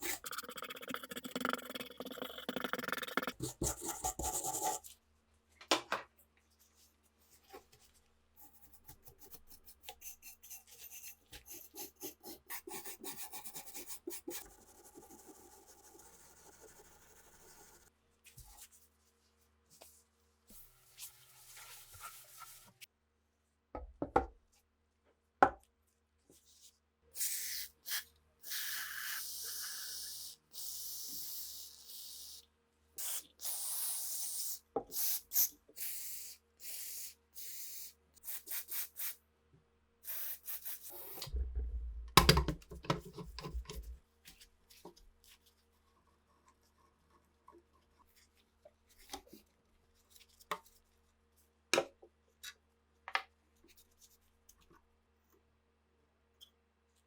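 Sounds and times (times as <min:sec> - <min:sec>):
low rumbling: 0:41.3 - 0:42.2.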